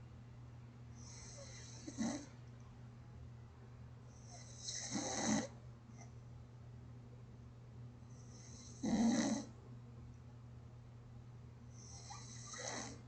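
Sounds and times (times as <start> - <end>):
steady low hum: 0.0 - 13.0
man snoring: 1.0 - 2.3, 4.4 - 5.5, 8.4 - 9.5, 11.8 - 13.0.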